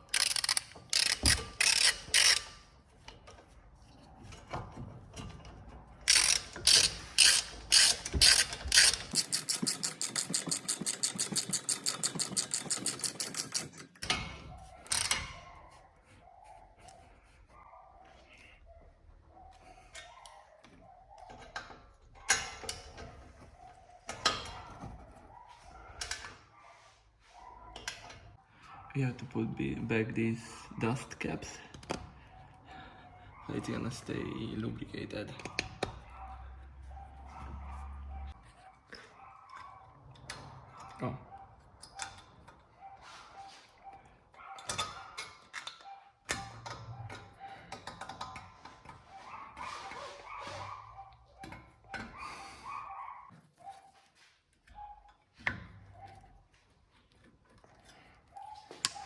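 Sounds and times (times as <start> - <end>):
metal tools clicking: 0.0 - 3.2, 6.0 - 14.2.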